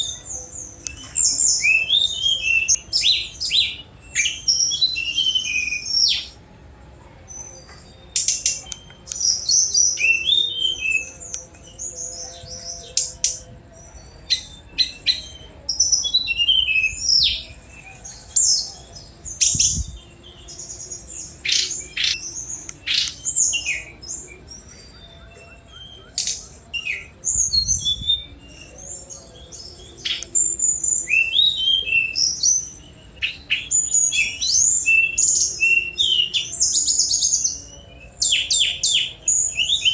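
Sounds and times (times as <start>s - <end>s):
small bird chirping and trilling: 14.3s - 39.9s.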